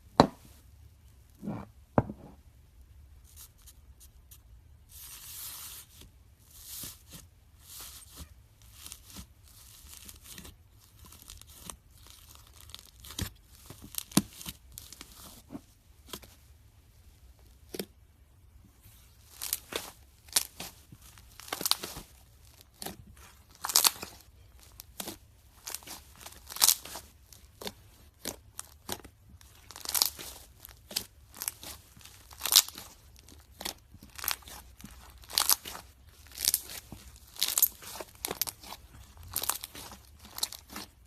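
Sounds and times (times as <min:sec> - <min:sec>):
slime crackling and popping: 0:19.2 - 0:41.0.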